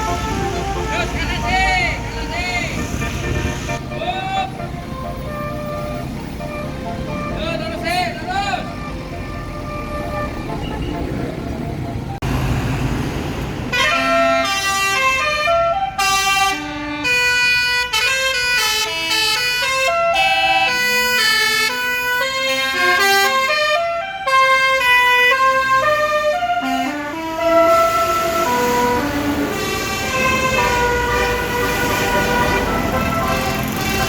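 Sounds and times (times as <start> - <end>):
multi-tone air horn tune: 0.0 - 4.4, 13.7 - 34.0.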